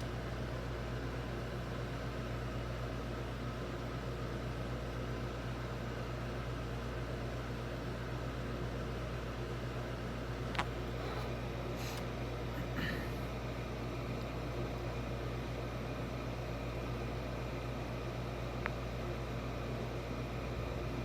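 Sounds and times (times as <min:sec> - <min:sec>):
low even hum: 0:00.0 - 0:21.0.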